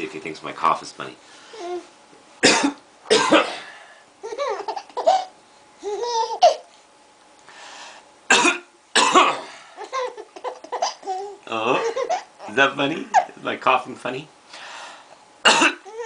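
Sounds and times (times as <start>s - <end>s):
man coughing: 2.4s - 3.8s, 8.3s - 9.7s, 15.4s - 15.9s
baby laughing: 4.2s - 6.7s, 9.8s - 13.4s.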